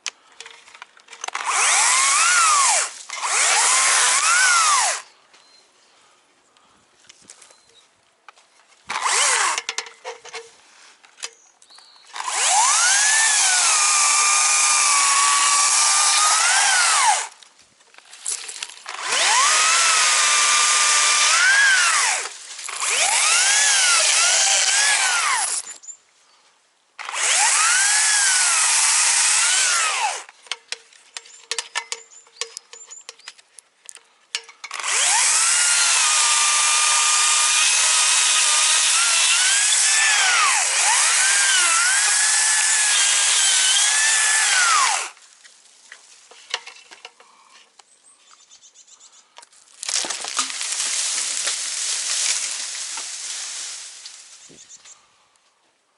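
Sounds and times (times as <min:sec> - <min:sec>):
chainsaw cutting branches: 0:01.2 - 0:05.1, 0:08.9 - 0:09.8, 0:12.1 - 0:17.4, 0:18.3 - 0:25.8, 0:27.0 - 0:30.3, 0:34.7 - 0:45.3, 0:49.8 - 0:54.5.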